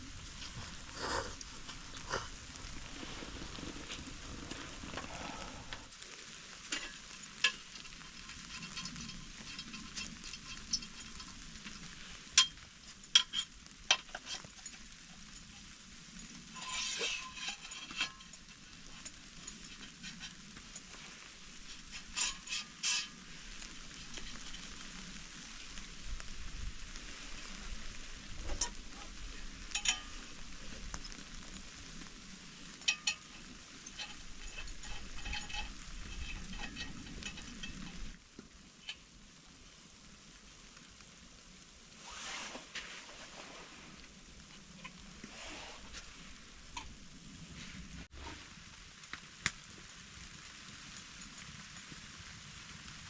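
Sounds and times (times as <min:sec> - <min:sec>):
utensil clinking against pan: 0:32.8 - 0:38.1.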